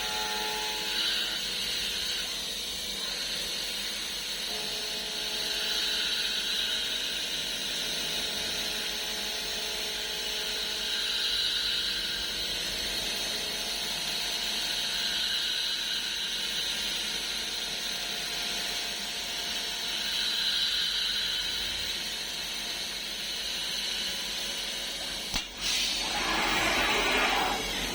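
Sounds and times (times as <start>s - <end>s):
milling machine cutting steel: 25.3s - 27.9s.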